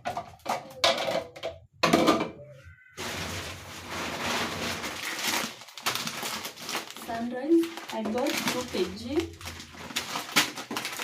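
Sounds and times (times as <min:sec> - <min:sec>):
packets knocking and scraping: 0:00.0 - 0:02.3, 0:03.0 - 0:11.0
plastic packaging rustling: 0:03.0 - 0:11.0.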